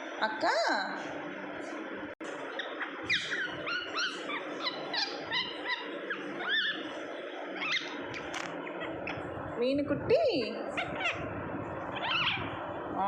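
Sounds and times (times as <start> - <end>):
parrot chirping: 2.4 - 9.4, 10.6 - 12.7.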